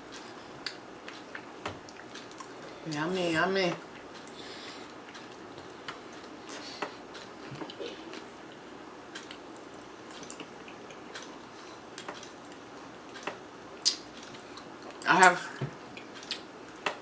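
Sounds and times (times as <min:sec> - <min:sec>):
low room hiss: 0:00.0 - 0:17.0.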